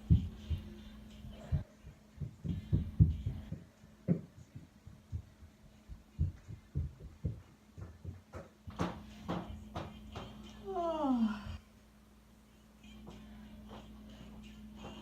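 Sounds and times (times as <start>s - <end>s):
steady low hum: 0.0s - 15.0s
feet and hands thudding on floor: 1.9s - 10.3s.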